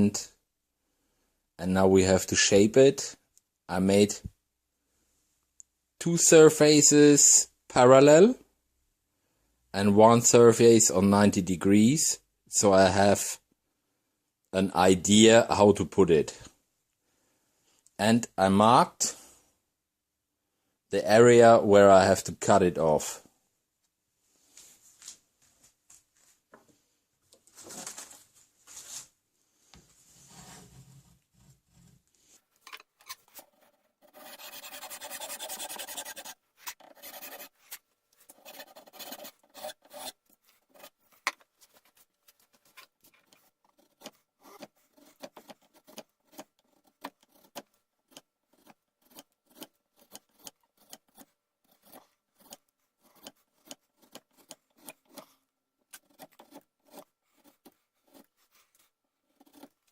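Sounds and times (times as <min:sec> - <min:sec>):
hand tool rasping on horn: 0:33.1 - 0:41.0.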